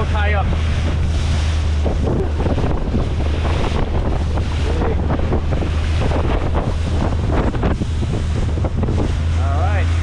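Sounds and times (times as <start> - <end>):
boat motor humming: 0.0 - 10.0
waves splashing against hull: 0.0 - 10.0
wind buffeting microphone: 0.0 - 10.0.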